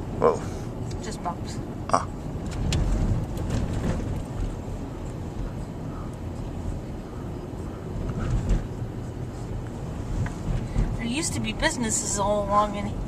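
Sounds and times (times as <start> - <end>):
car road noise rumble: 0.0 - 13.0
car jolting on bumps: 2.4 - 5.6, 7.8 - 9.0, 10.1 - 11.7.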